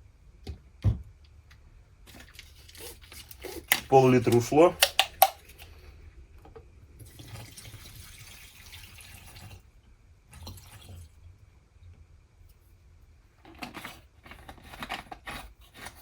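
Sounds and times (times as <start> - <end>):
liquid trickling into a bottle: 7.0 - 9.7, 10.3 - 11.2.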